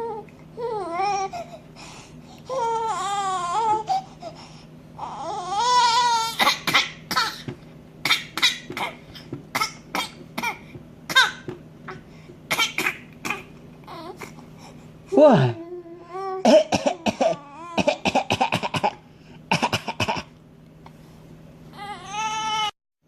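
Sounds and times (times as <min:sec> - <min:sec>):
baby crying angrily: 0:02.5 - 0:04.0, 0:05.0 - 0:07.4, 0:21.8 - 0:22.7
baby forced coughs: 0:06.3 - 0:11.5, 0:12.5 - 0:13.5, 0:16.4 - 0:20.3.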